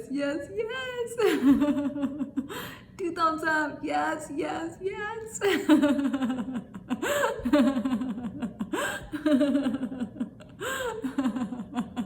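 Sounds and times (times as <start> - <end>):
woman laughing: 1.2 - 2.8, 5.4 - 12.0.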